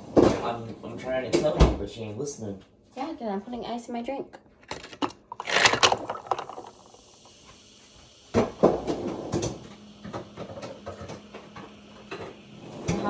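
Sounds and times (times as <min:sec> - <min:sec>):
ice cubes clattering into cup: 0:04.6 - 0:07.4.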